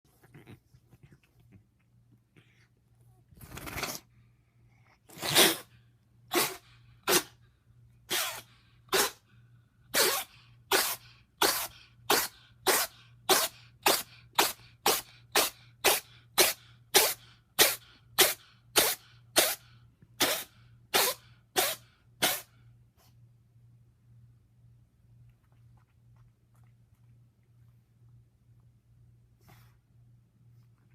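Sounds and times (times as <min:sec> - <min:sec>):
cat sneezing: 0:03.4 - 0:04.1, 0:05.0 - 0:07.4, 0:08.0 - 0:09.3, 0:09.9 - 0:23.1.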